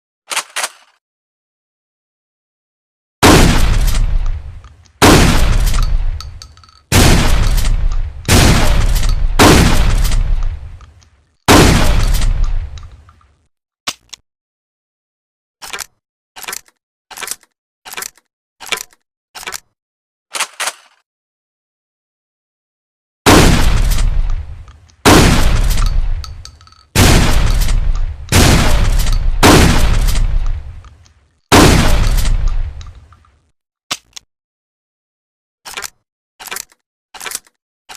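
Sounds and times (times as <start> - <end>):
shotgun shots echoing: 3.2 - 10.9, 11.5 - 12.8, 23.3 - 30.8, 31.5 - 33.1.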